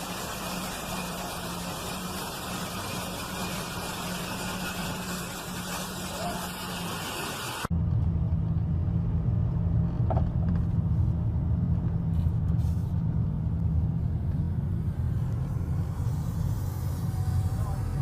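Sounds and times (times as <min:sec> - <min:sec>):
vehicle engine rumbling: 0:00.0 - 0:18.0
hissy noise: 0:14.8 - 0:18.0.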